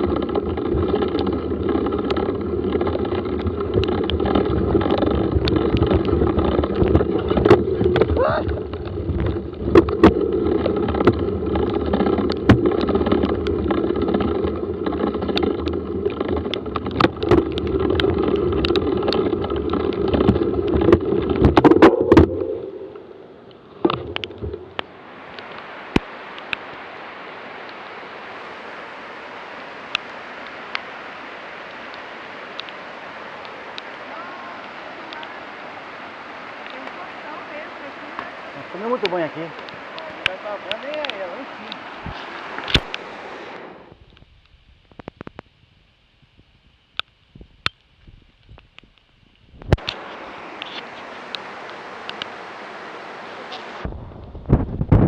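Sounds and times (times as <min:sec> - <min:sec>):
rattling ride noise with knocks: 0:00.0 - 0:22.6
faint clicks: 0:00.0 - 0:26.6, 0:31.6 - 0:32.8, 0:34.6 - 0:35.4, 0:36.6 - 0:37.0, 0:39.0 - 0:43.0, 0:50.6 - 0:52.3
waterfall rushing: 0:00.0 - 0:43.9, 0:49.8 - 0:53.9.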